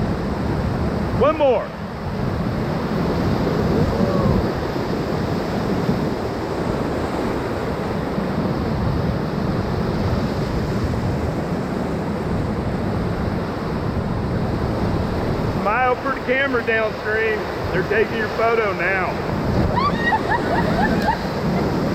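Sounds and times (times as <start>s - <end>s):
wind buffeting microphone: 0.0s - 21.9s
whitewater rushing: 13.1s - 21.9s.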